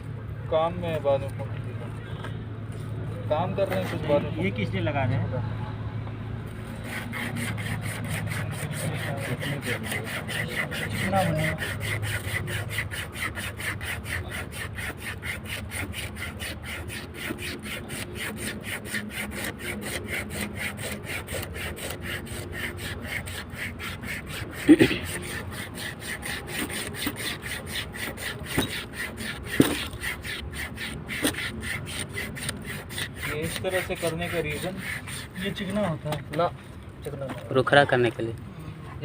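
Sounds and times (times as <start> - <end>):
rhythmic scraping of cable: 6.6 - 36.4.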